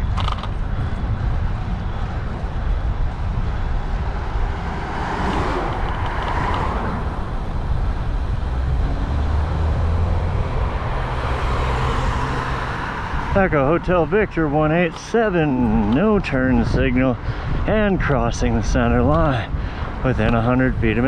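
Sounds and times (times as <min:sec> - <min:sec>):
car traffic: 0:00.0 - 0:21.0
wind rumble on microphone: 0:00.0 - 0:21.0
car passing close by: 0:04.0 - 0:13.8.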